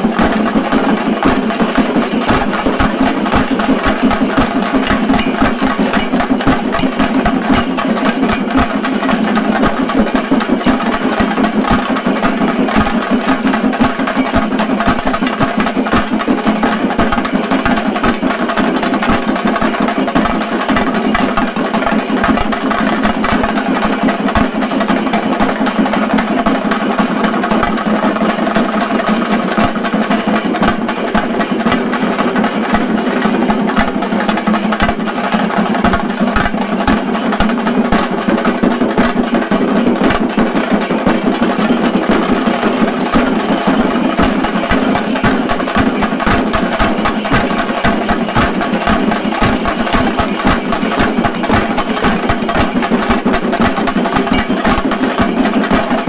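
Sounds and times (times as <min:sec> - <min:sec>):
drums in fast rolls: 0:00.0 - 0:56.0.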